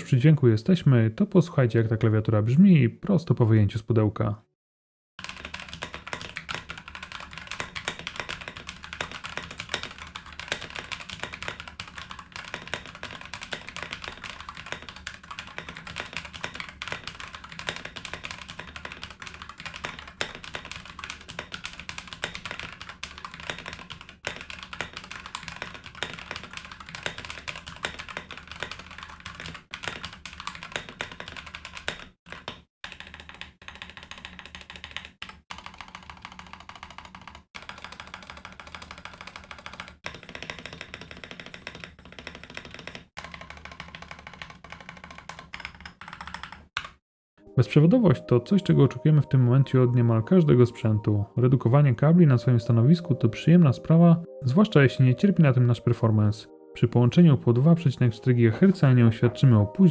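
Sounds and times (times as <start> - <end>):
typing on mechanical keyboard: 5.2 - 47.0.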